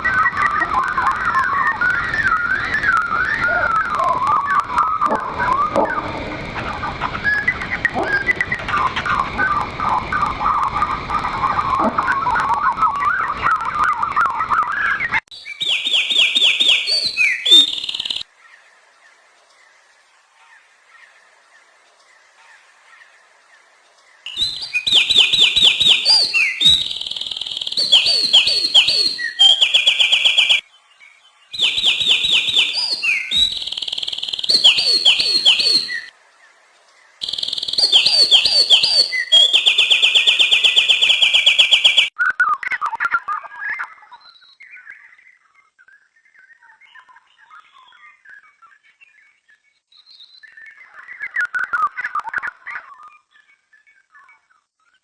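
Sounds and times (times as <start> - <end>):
songbird warbling and trilling: 0.0 - 18.8, 22.0 - 42.6.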